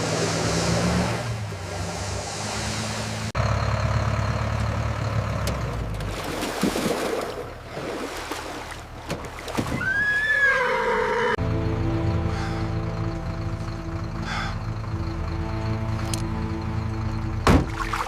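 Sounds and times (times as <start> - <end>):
horse whinnying: 9.8 - 11.4
boat motor running: 11.4 - 18.0.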